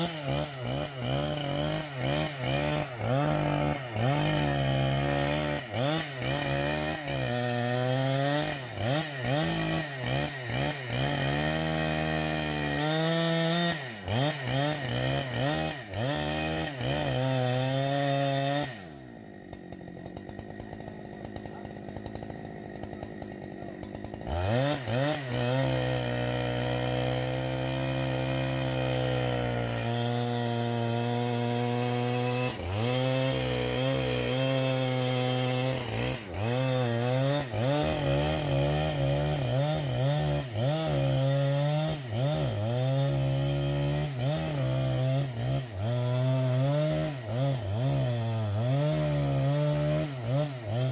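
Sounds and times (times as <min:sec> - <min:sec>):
chainsaw engine revving: 0:00.0 - 0:50.9.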